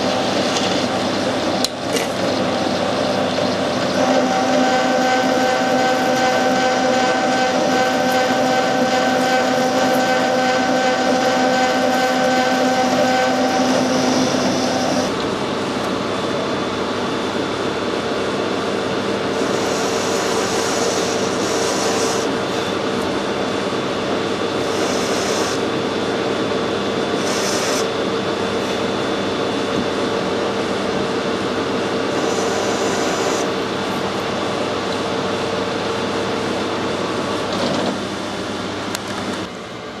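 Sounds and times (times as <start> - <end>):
metal lathe humming with gear whine: 0.0 - 40.0
hissy cutting: 3.7 - 15.2, 19.3 - 22.8, 24.6 - 25.7, 27.2 - 27.9, 32.0 - 33.6.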